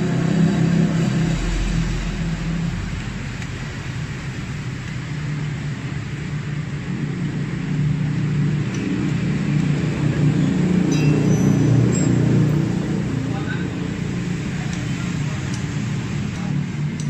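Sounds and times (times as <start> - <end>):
low hum: 0.0 - 11.6.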